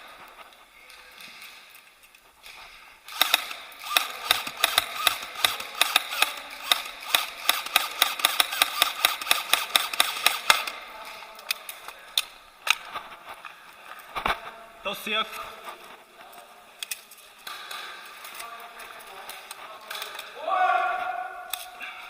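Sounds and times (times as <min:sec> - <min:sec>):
airsoft guns firing: 0:03.1 - 0:10.8.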